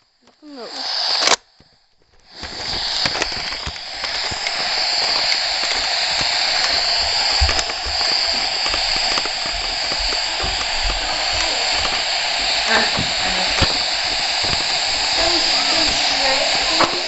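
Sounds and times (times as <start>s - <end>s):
steady rushing hiss: 0.0s - 17.0s
low thumps: 5.8s - 17.0s.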